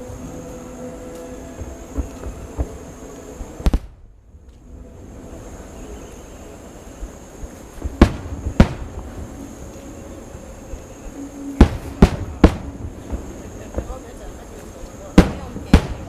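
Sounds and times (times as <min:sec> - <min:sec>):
fireworks bangs: 0:01.6 - 0:04.1, 0:07.0 - 0:09.6, 0:11.5 - 0:16.0.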